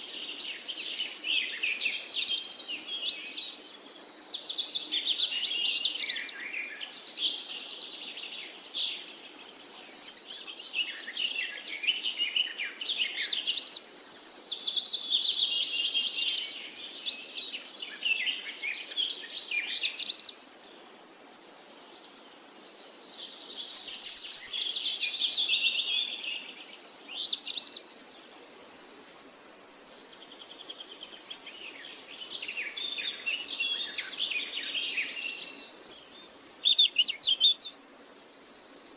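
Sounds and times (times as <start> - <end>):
bird chirps and trills: 30.9 - 38.9.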